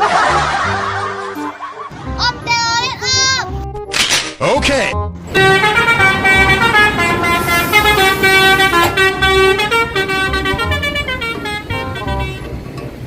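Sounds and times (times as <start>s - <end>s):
multi-tone bus horn tune: 5.2s - 13.0s.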